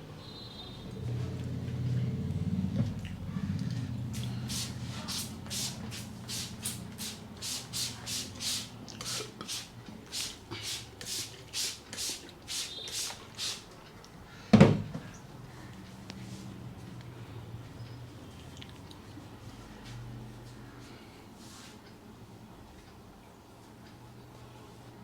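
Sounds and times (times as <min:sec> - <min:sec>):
hands rubbing hair: 0:04.1 - 0:13.7
heavy thump: 0:14.5 - 0:15.1.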